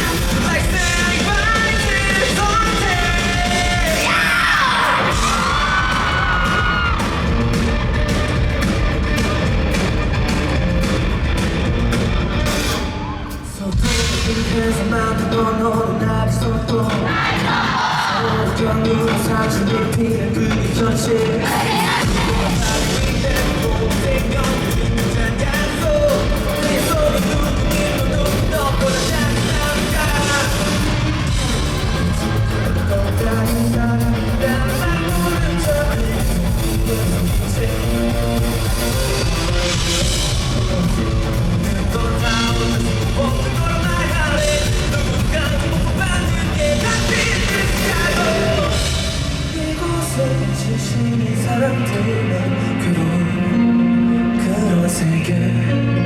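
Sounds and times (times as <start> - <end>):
person singing: 0.0 - 7.1, 13.3 - 56.0
rock band playing: 0.0 - 56.0.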